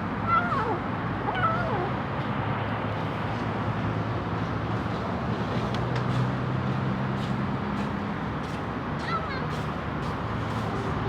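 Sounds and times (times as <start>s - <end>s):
constant noisy hiss: 0.0s - 11.0s
kitten meowing: 0.3s - 1.9s.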